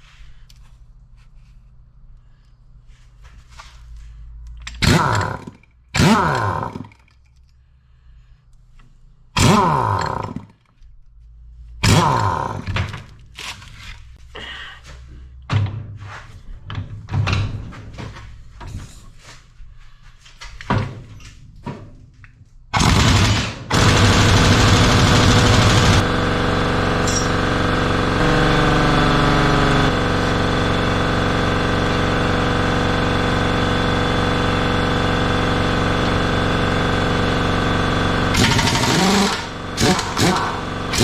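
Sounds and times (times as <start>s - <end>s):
pneumatic impact wrench hammering: 4.7s - 7.1s, 9.4s - 10.6s, 11.8s - 13.0s, 22.8s - 41.0s
metal tools clanking: 27.0s - 27.5s.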